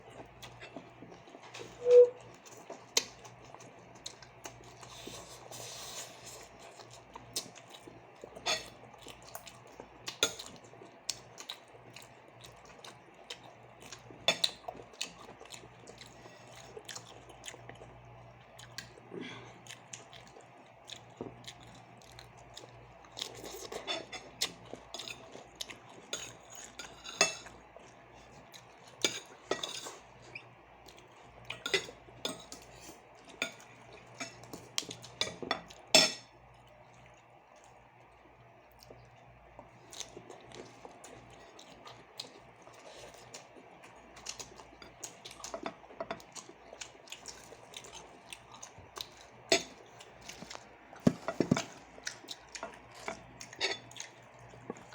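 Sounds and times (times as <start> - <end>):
chewing: 0.0 - 54.9
utensils clinking on a plate: 35.2 - 36.3, 51.0 - 51.8, 52.6 - 53.9.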